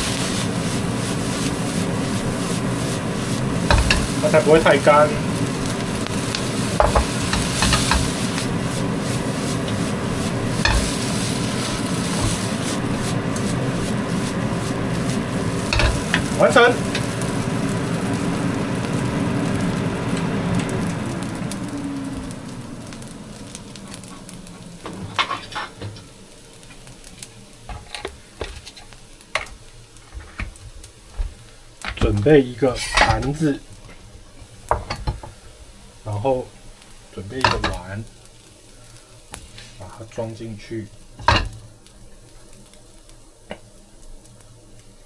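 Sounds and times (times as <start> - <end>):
spatula scraping wok: 0.0 - 21.5, 23.9 - 31.4
rice sizzling in a wok: 0.0 - 45.0
spatula scraping and clinking wok: 3.5 - 4.8, 6.8 - 8.4, 9.1 - 13.6, 15.0 - 17.2, 25.0 - 25.8.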